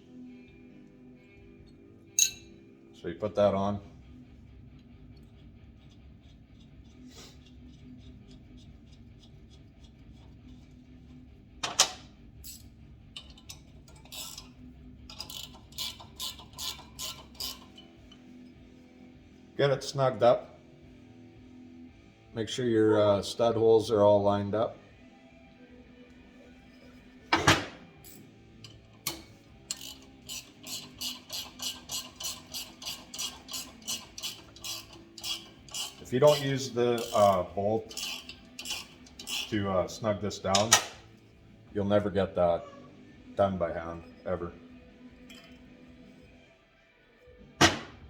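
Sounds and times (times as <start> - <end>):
metal clutch parts clanking: 11.6 - 18.3, 27.3 - 41.2
ratchet wrench clicking: 12.5 - 17.9, 28.1 - 39.7.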